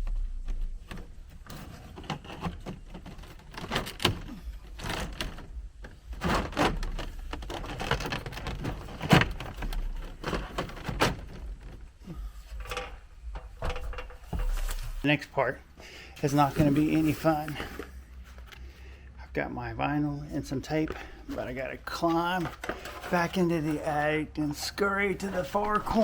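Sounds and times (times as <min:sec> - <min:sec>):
knocks and clunks of handling: 0:00.0 - 0:15.1, 0:20.7 - 0:24.1.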